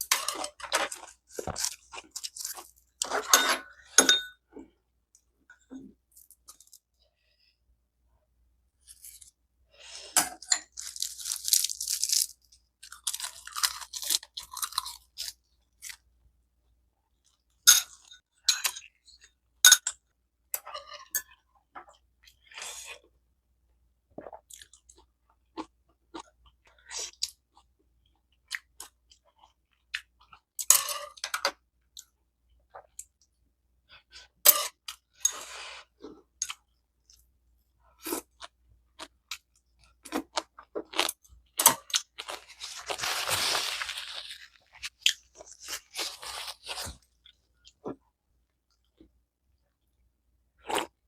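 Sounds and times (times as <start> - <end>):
person chewing and crunching food: 0.0 - 4.0, 8.8 - 16.1, 24.2 - 49.2, 50.6 - 51.0.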